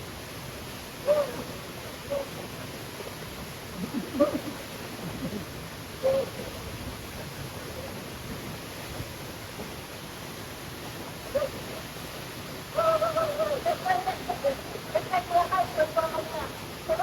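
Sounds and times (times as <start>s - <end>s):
waterfall rushing: 0.0s - 17.0s
short hoot-like calls: 6.0s - 6.5s.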